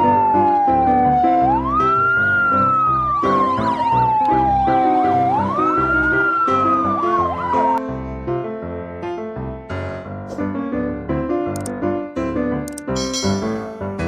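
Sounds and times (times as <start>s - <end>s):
siren wailing: 0.0s - 7.8s
warbling siren: 0.0s - 7.8s
piano music: 0.0s - 14.0s.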